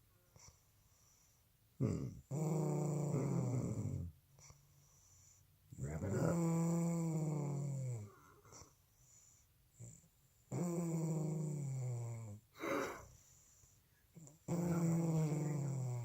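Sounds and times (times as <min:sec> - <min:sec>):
woman snoring: 0:10.5 - 0:13.1, 0:14.5 - 0:16.0
noisy breath out: 0:12.6 - 0:13.9.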